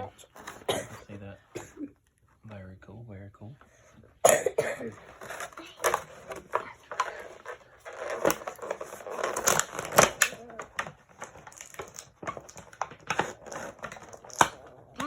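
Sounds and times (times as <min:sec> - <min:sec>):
plastic packaging crinkling: 0:05.0 - 0:15.0.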